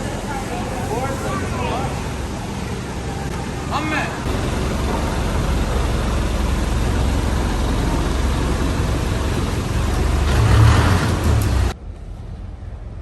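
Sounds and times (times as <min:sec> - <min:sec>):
boat engine running: 0:04.3 - 0:11.8.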